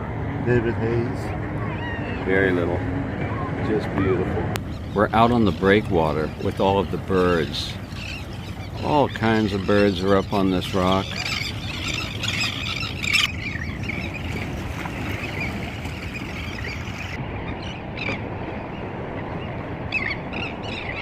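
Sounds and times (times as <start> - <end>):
wind: 0.0 - 21.0
water washing: 1.3 - 17.2
seabirds squawking: 1.3 - 18.2, 19.9 - 21.0.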